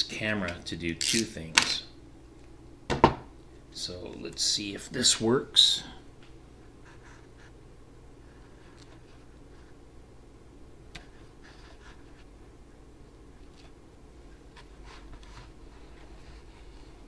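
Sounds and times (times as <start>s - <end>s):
soft rustles: 13.4s - 17.0s.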